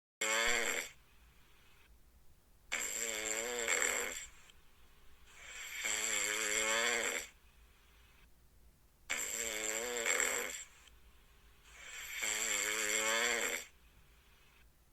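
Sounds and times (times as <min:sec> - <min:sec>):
cat snoring: 0:00.2 - 0:01.0, 0:02.7 - 0:04.5, 0:05.3 - 0:07.4, 0:09.1 - 0:10.9, 0:11.6 - 0:14.7.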